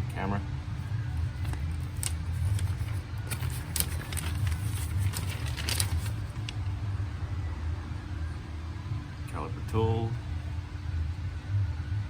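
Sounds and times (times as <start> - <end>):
low engine-like hum: 0.0 - 12.0
paper rustling and clicking: 1.2 - 6.6.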